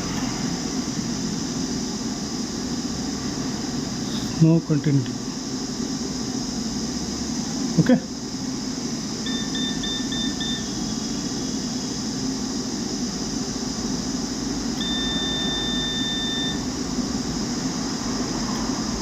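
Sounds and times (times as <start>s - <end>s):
multimeter beeps: 9.2s - 11.0s, 14.8s - 16.7s.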